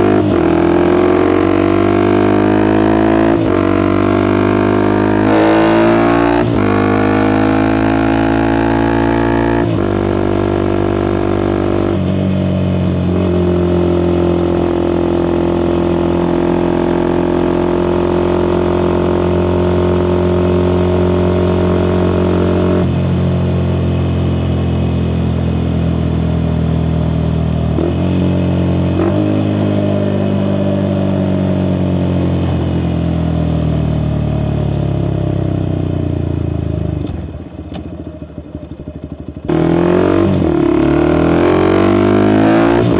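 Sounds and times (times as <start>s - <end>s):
motorcycle engine while riding: 0.0s - 42.9s.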